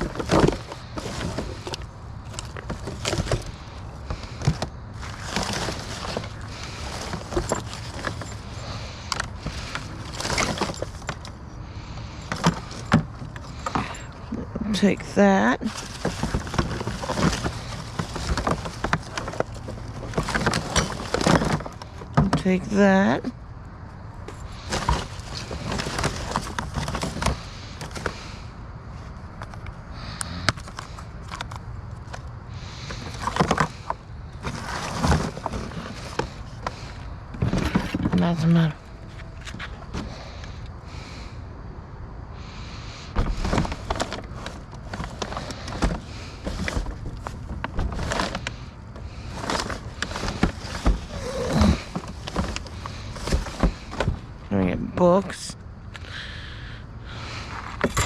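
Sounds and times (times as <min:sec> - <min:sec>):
household items knocking and clinking: 0:00.0 - 0:11.3, 0:12.2 - 0:23.2, 0:57.8 - 0:58.0
rustling: 0:00.0 - 0:41.3, 0:42.5 - 0:54.5
low outdoor rumble: 0:00.0 - 0:58.0.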